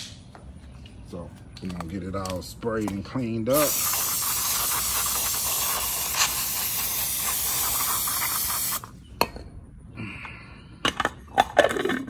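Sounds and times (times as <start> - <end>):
aerosol can spraying: 3.5 - 8.9.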